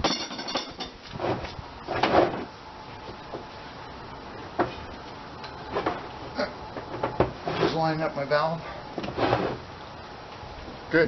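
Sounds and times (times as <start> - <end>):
tire thumping and rubbing on rim: 0.0 - 3.6, 4.3 - 8.2, 8.9 - 9.8.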